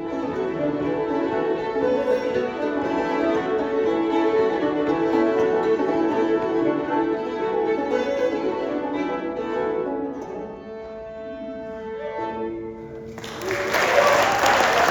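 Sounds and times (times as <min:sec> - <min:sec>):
fiddles and banjo playing: 0:00.0 - 0:12.9
applause: 0:13.1 - 0:14.9.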